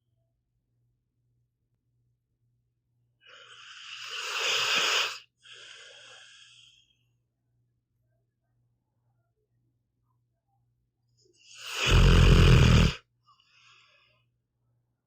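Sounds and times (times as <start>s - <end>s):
dog snoring: 3.3s - 5.2s, 11.6s - 13.0s.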